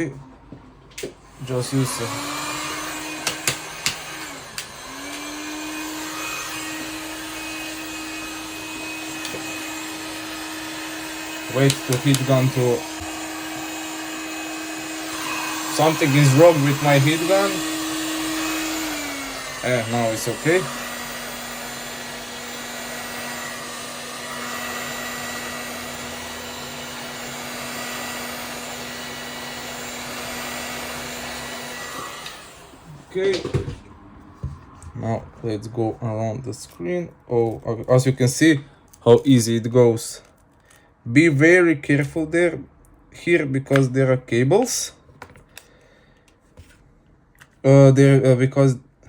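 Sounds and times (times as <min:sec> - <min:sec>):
heat gun blowing: 0:01.0 - 0:33.7
sharp clicks: 0:03.2 - 0:05.3.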